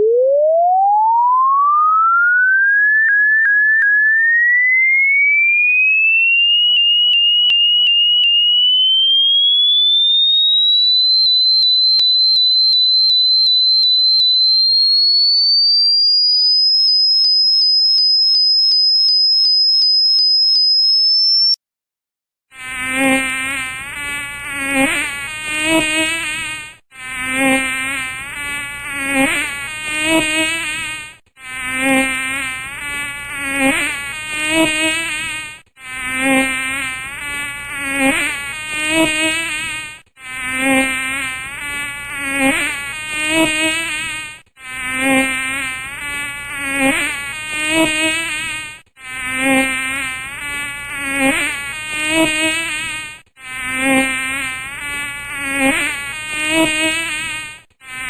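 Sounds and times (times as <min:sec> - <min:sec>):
housefly buzzing: 0:22.5 - 0:58.0.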